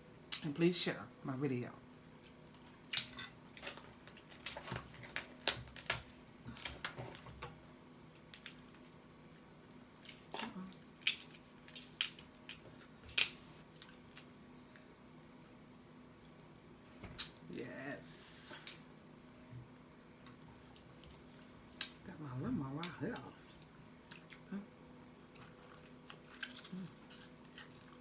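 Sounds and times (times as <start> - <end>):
crab shell cracking: 2.8 - 7.0, 8.1 - 8.9, 10.0 - 14.4.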